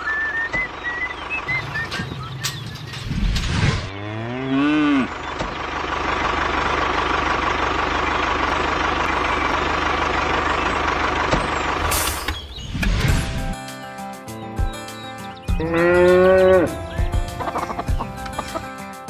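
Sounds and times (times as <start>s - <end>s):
cow mooing: 3.9s - 5.2s, 15.6s - 16.8s.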